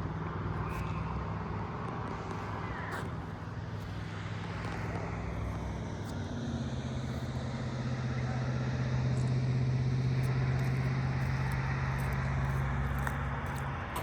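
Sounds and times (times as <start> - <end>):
vehicle engine running: 0.0 - 14.0.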